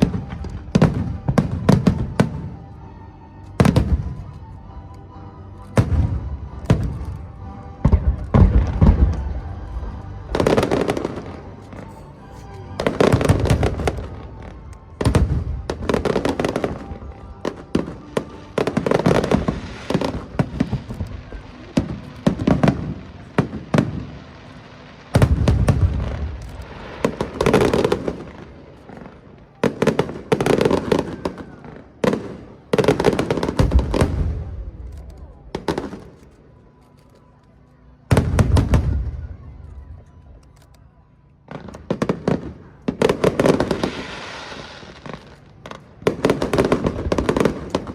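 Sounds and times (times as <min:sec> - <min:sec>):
firework bangs and booms: 0:00.0 - 0:02.7, 0:03.6 - 0:04.3, 0:05.7 - 0:12.0, 0:12.8 - 0:36.1, 0:38.1 - 0:39.6, 0:41.4 - 0:47.9
firework crackling: 0:05.7 - 0:12.1, 0:12.7 - 0:36.2, 0:41.5 - 0:47.9.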